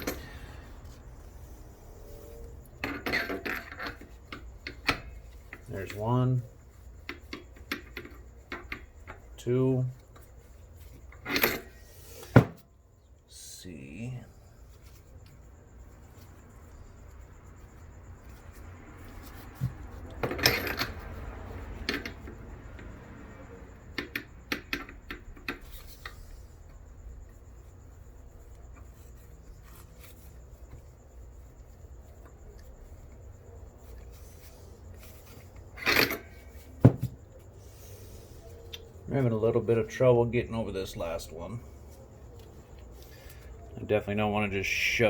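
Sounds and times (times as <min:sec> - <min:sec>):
metal tools clicking and clinking: 0:00.0 - 0:00.5
louder knocks on bench: 0:12.3 - 0:12.6, 0:36.8 - 0:37.2.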